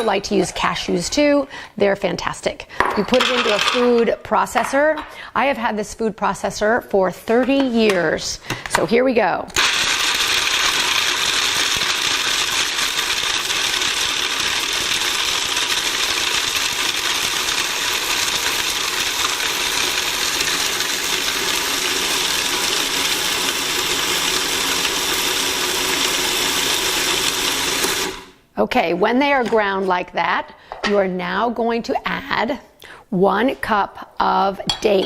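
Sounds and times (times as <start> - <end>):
food processor grinding nuts: 9.5 - 28.4.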